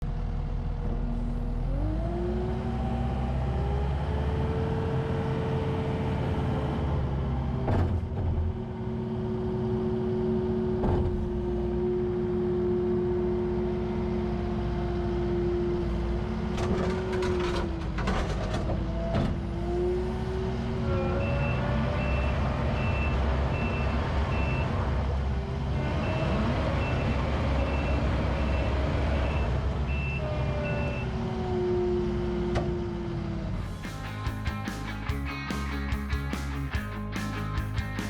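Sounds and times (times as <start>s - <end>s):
diesel engine revving: 0.9s - 8.0s, 18.7s - 38.0s.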